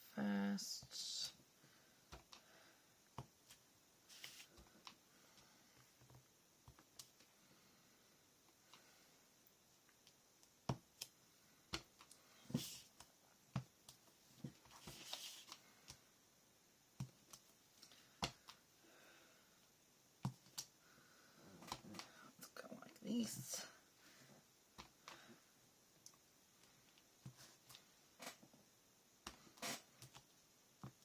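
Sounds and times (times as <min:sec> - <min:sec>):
soft paper rustling: 0:03.4 - 0:06.8, 0:14.2 - 0:16.0.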